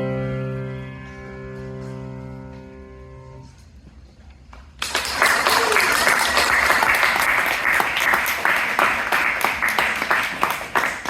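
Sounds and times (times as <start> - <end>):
audience applauding: 4.8 - 11.0.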